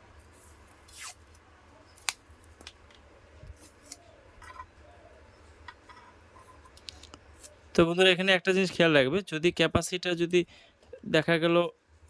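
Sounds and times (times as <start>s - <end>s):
crackles and handling clicks: 1.3s - 4.8s, 5.4s - 7.6s.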